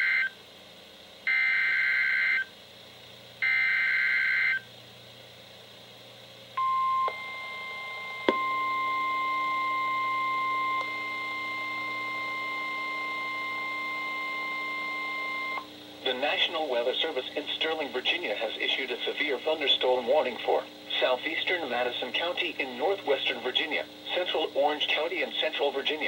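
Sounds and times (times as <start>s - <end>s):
steady warning alarm tone: 1.3s - 2.5s, 3.4s - 4.6s, 6.6s - 15.7s.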